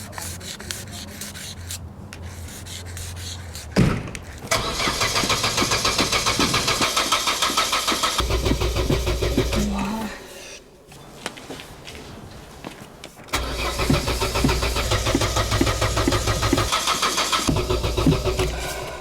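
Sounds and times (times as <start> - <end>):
car starter cranking: 4.5 - 9.9, 13.3 - 19.0.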